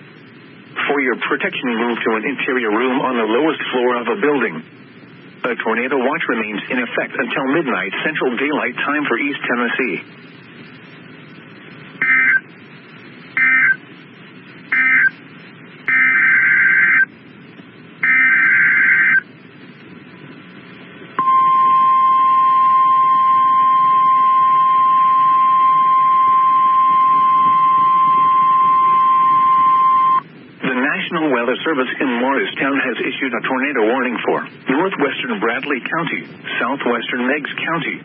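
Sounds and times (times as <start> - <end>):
steady warning alarm tone: 12.0 - 12.4, 13.4 - 13.8, 14.7 - 15.2, 15.9 - 17.1, 18.0 - 19.2, 21.2 - 30.2
warbling data bursts: 12.0 - 12.6, 13.2 - 13.8, 14.7 - 15.2, 15.8 - 17.1, 18.0 - 19.3.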